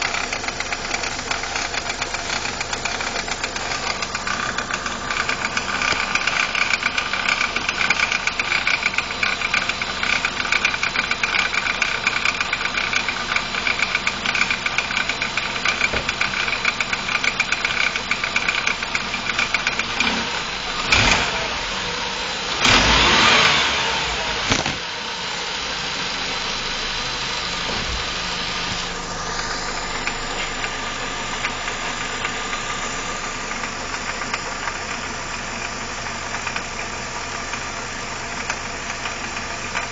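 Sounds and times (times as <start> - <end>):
car engine idling with rattle: 0.0 - 39.9.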